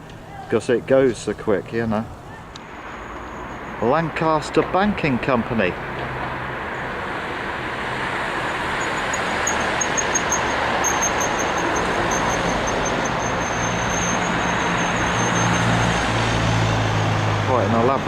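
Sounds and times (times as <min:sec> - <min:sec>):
road traffic passing: 0:00.0 - 0:18.0
low engine hum: 0:02.1 - 0:18.0
thin high whine: 0:02.6 - 0:18.0.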